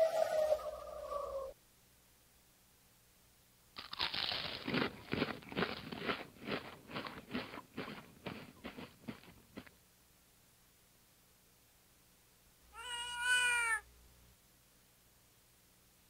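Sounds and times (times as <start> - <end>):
crunching: 3.8 - 9.7.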